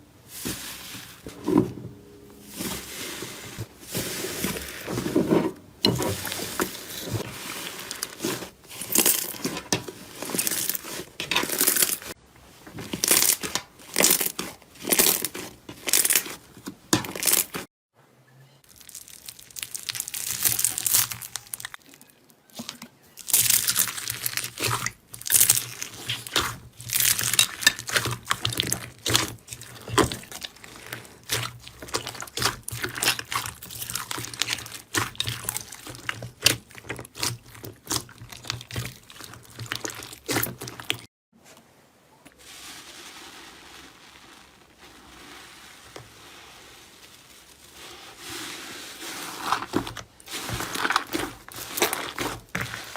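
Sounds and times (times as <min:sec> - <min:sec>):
slime crackling and popping: 0:12.9 - 0:16.4, 0:18.7 - 0:41.1.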